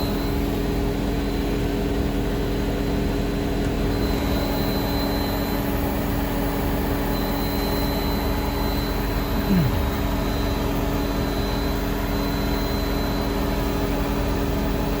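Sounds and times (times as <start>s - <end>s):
steady low hum: 1.9s - 15.0s
high-pitched whine: 3.9s - 15.0s.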